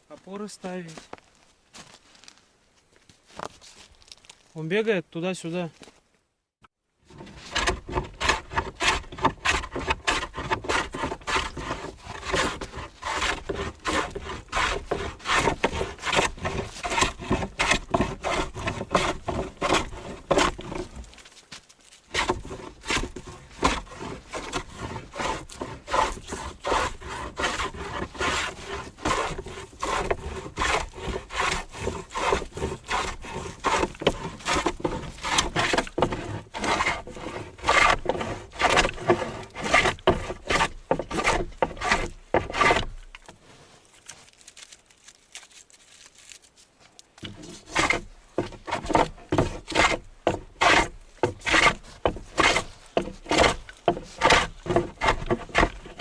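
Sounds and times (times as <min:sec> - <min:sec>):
hand plane shaving wood: 0:07.1 - 0:21.1, 0:22.1 - 0:43.6, 0:47.2 - 0:56.0.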